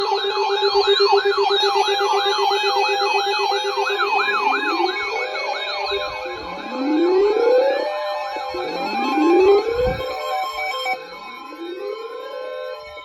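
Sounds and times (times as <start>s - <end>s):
yelping siren: 3.6s - 13.0s
slow rising siren wail: 3.9s - 13.0s
rapidly pulsing low tone: 5.8s - 10.6s.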